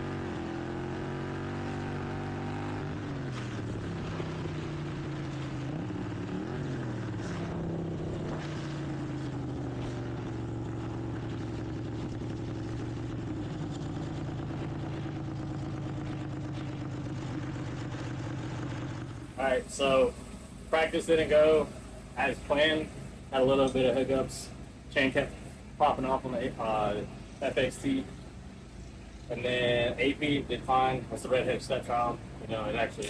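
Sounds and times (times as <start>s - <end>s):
lawn mower engine running hard: 0.0s - 33.0s.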